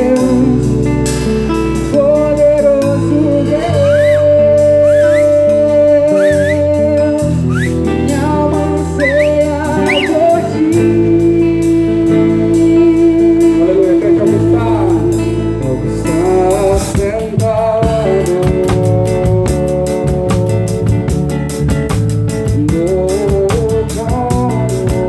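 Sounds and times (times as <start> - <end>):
drum kit: 0.0 - 25.0
live worship band playing: 0.0 - 25.0
singing: 2.1 - 15.1.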